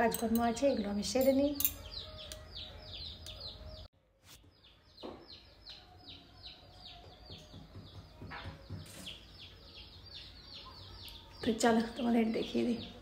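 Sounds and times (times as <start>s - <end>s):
bird chirping: 0.1s - 13.0s.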